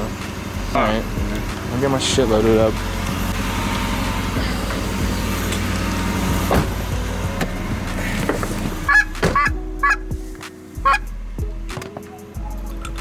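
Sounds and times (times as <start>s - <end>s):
goose honks: 8.9s - 10.0s, 10.8s - 11.1s.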